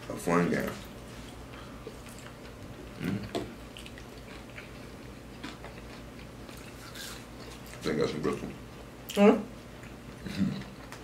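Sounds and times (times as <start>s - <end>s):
chewing and lip smacks: 0.8s - 7.8s.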